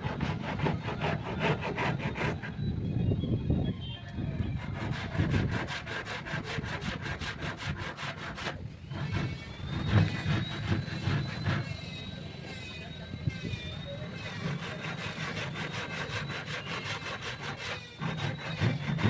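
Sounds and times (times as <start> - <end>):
hand tool rasping on wood: 0.0 - 2.6, 4.6 - 11.8, 14.2 - 19.0
high steady whine: 8.6 - 16.6.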